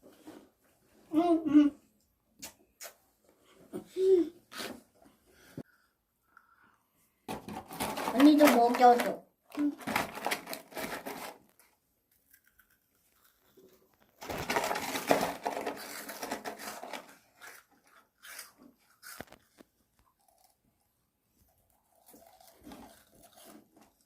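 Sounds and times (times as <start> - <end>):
plastic wrapper crinkling: 7.6 - 11.8, 12.4 - 17.6.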